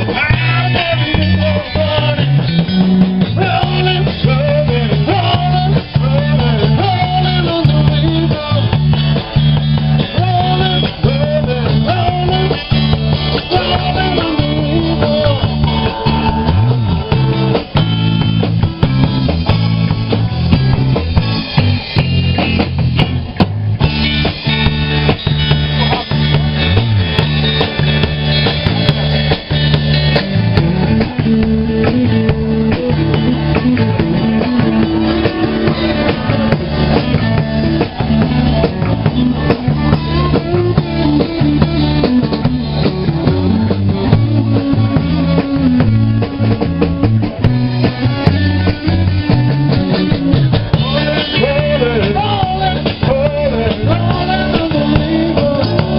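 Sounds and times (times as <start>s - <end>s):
bass guitar: 0.0s - 55.9s
drum kit: 0.0s - 55.9s
electric guitar: 0.0s - 55.9s.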